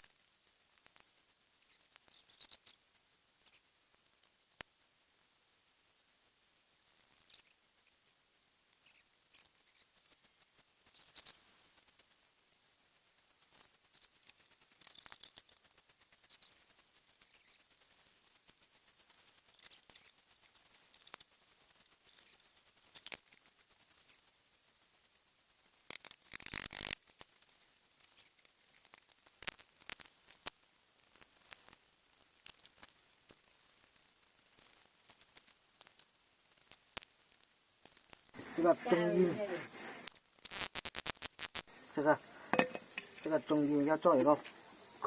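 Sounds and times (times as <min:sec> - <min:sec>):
small parts clicking and scratching: 0:00.0 - 0:02.8, 0:03.4 - 0:04.8, 0:06.8 - 0:38.4, 0:40.0 - 0:41.7
sharp ticks: 0:25.8 - 0:27.3, 0:40.0 - 0:43.4.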